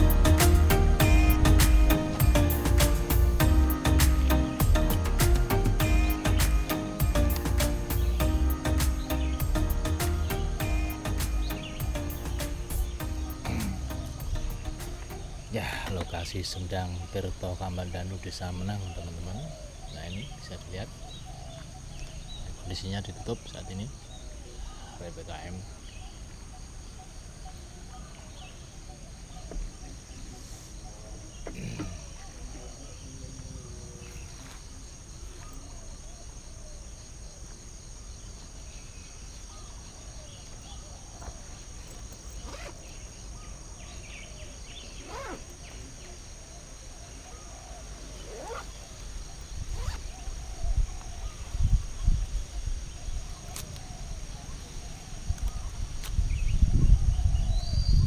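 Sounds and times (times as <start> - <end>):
insect chorus: 0.0 - 58.0
wind buffeting microphone: 55.2 - 58.0.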